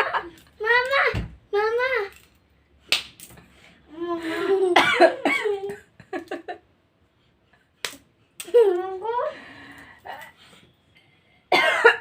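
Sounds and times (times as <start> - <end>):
woman coughing: 4.7 - 5.7, 11.5 - 12.0
woman speaking: 8.7 - 10.4.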